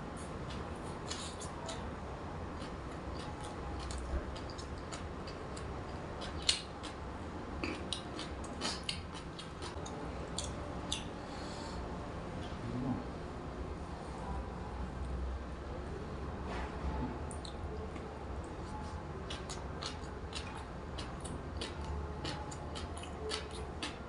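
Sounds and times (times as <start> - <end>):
person chewing crunchily: 0.4 - 1.8, 2.6 - 7.0, 7.6 - 11.1, 19.2 - 24.0.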